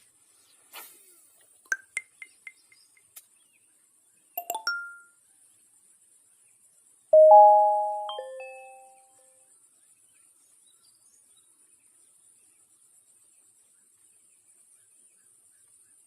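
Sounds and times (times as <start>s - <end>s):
bell-like ding-dong: 4.4s - 5.1s, 7.2s - 9.0s
cluster of tones: 4.4s - 5.1s, 7.2s - 9.0s
short high pings: 4.4s - 5.1s, 7.2s - 9.0s.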